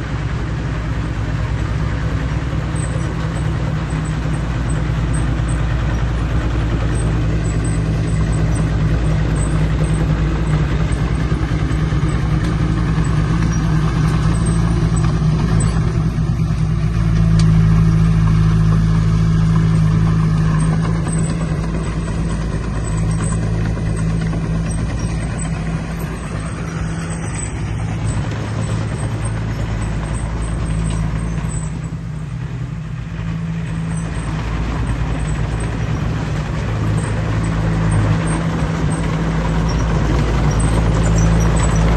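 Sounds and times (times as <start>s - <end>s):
heavy diesel engine running: 0.0s - 41.9s.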